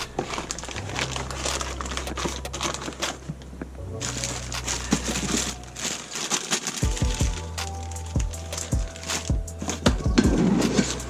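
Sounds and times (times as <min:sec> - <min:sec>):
parts crinkling and rustling: 0:00.1 - 0:06.8
background music with steady beat: 0:06.8 - 0:11.0.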